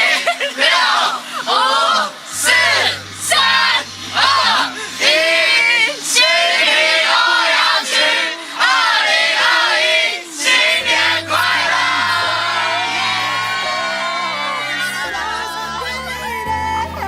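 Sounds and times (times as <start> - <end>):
long held sung notes: 0.0 - 17.0
loud voices singing and shouting: 0.0 - 17.0
music with bass line: 2.3 - 5.6, 10.5 - 17.0.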